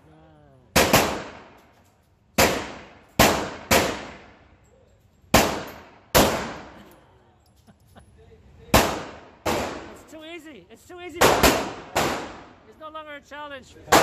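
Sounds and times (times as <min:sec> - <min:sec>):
pistol shots with echo: 0:00.7 - 0:01.6, 0:02.4 - 0:04.4, 0:05.3 - 0:06.8, 0:08.7 - 0:10.0, 0:11.2 - 0:12.6.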